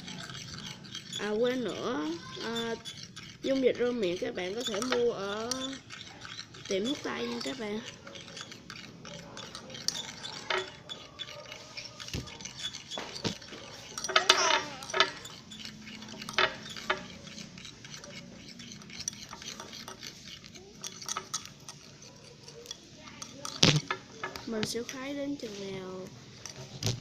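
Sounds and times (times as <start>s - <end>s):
stirrer scraping bowl: 0.0s - 27.0s.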